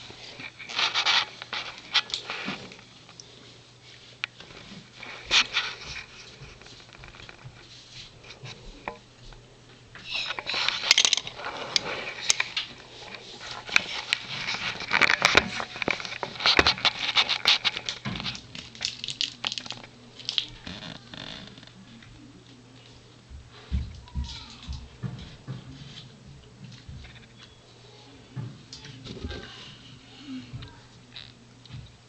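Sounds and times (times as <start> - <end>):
rustling and crackling in bedding: 0.0 - 8.8, 9.4 - 23.8.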